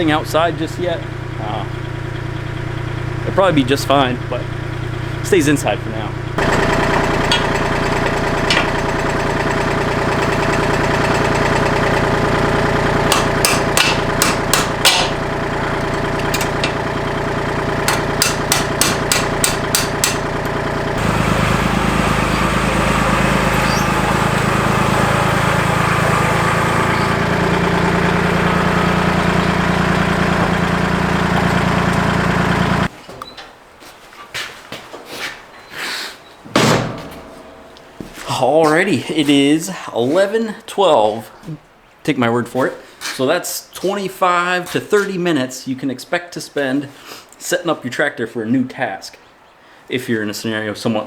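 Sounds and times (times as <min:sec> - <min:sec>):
tractor diesel engine running: 0:00.0 - 0:32.9, 0:36.7 - 0:38.5
sharp metallic knocks: 0:06.4 - 0:09.4, 0:13.0 - 0:16.8, 0:17.8 - 0:20.6, 0:36.5 - 0:38.3.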